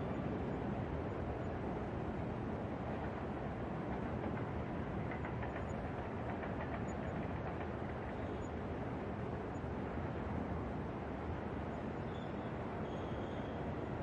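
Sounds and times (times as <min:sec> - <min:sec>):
subway train rumble: 0:00.0 - 0:14.0.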